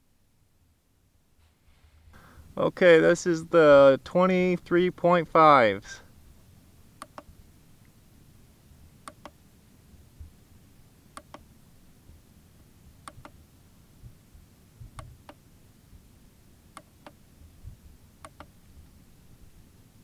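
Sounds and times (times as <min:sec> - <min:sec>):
pairs of sharp clicks: 0:07.0 - 0:07.3, 0:09.0 - 0:09.4, 0:11.2 - 0:11.4, 0:13.0 - 0:13.4, 0:18.2 - 0:18.6.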